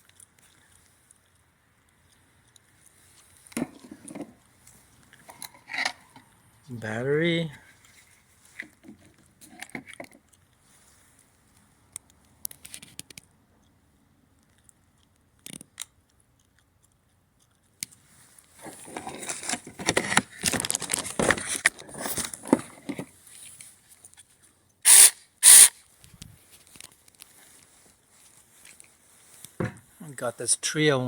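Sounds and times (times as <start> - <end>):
scraping and clattering: 18.6 - 23.1
loud chainsaw bursts: 24.9 - 25.7.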